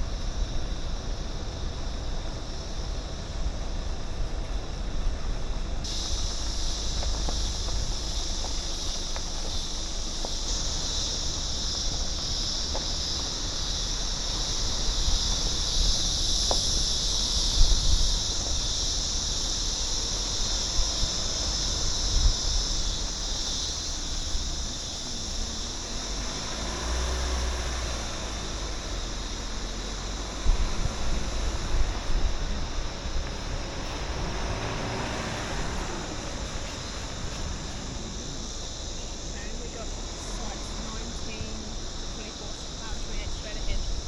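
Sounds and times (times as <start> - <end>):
low rumble: 0.0 - 26.2, 35.4 - 44.0
insects buzzing: 0.0 - 44.0.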